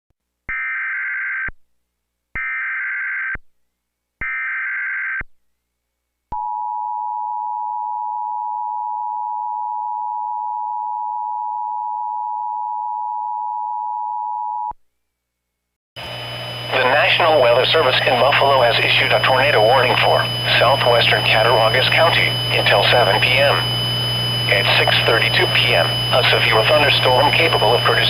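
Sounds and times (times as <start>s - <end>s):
data tone bursts: 16.0s - 28.0s.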